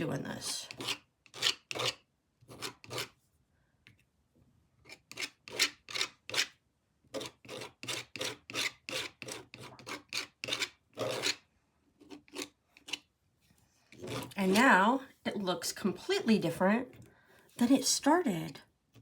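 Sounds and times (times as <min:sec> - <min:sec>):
tool scraping wet paint: 0:00.7 - 0:03.2, 0:04.9 - 0:06.5, 0:07.1 - 0:13.1, 0:13.9 - 0:14.8.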